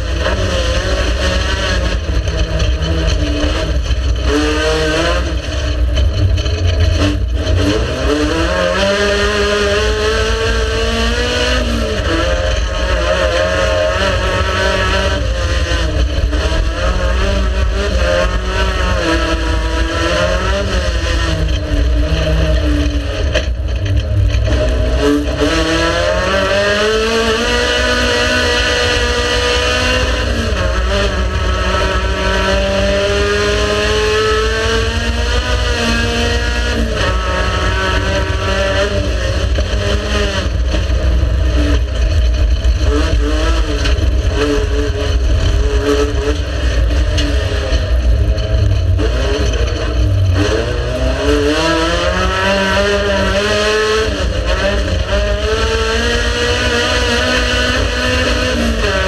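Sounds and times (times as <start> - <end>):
race car engine revving: 0.0 - 59.0.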